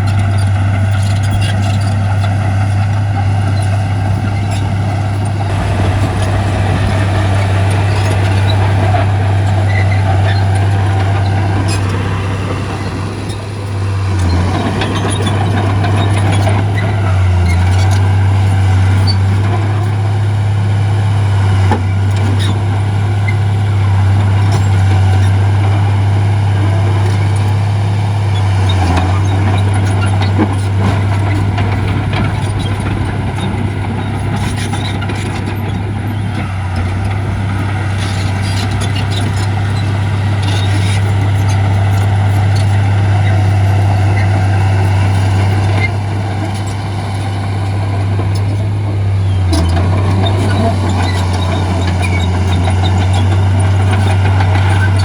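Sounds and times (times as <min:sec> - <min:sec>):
diesel machinery engine drone: 0:00.0 - 0:55.0.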